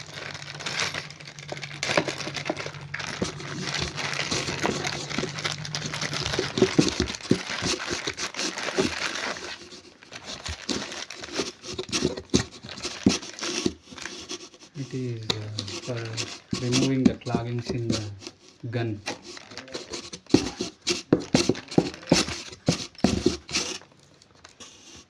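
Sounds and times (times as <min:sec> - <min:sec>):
low steady hum: 0:00.0 - 0:08.1
plastic packaging crinkling: 0:00.0 - 0:25.0.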